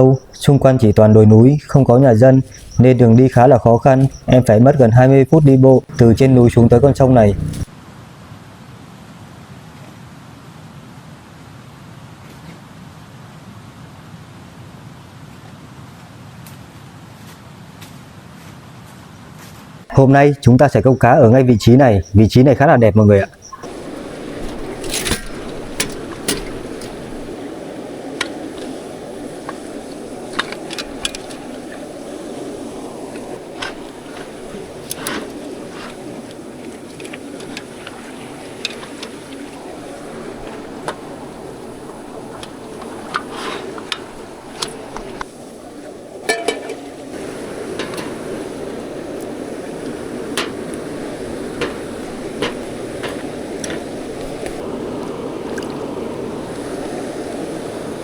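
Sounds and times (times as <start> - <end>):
steady rushing noise: 0.0 - 7.7, 23.2 - 58.0
flowing river water: 0.0 - 13.4, 19.9 - 58.0.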